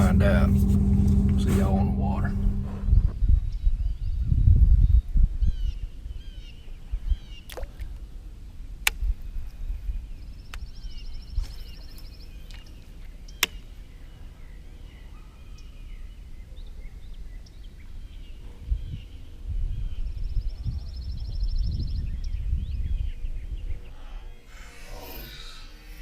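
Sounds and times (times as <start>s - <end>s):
high buzzy trill: 0.0s - 3.1s
wind rumble on microphone: 0.0s - 11.5s, 18.4s - 24.2s.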